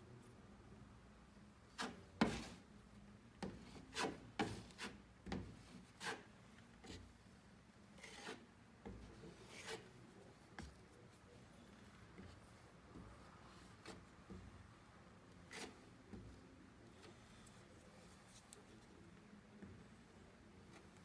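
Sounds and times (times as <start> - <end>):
putty knife scraping compound: 1.8 - 2.6, 3.4 - 5.0, 5.7 - 7.1, 8.0 - 10.0, 15.4 - 16.4.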